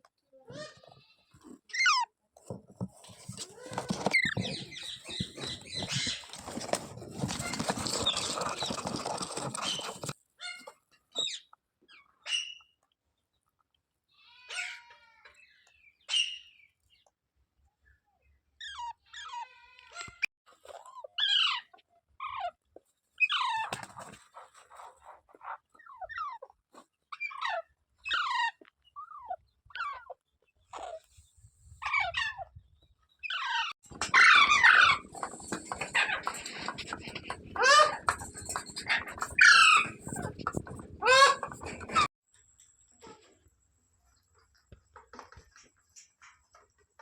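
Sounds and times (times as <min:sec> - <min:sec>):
parrot calling: 0:33.3 - 0:42.1.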